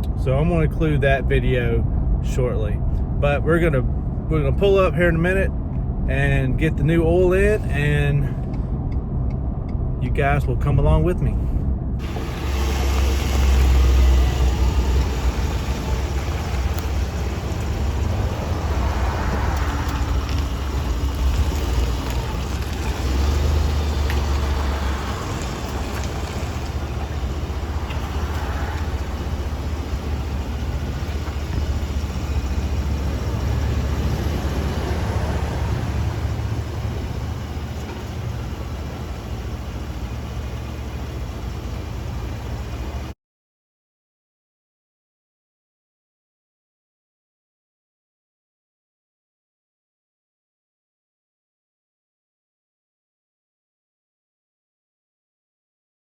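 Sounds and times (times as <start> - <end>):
pickup truck engine rumble: 0.0 - 43.2
road noise: 0.0 - 43.2.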